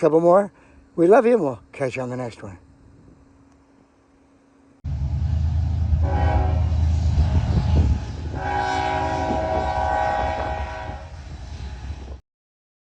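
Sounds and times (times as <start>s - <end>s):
locomotive engine rumble: 4.9s - 12.2s
locomotive horn blasts: 5.9s - 12.0s.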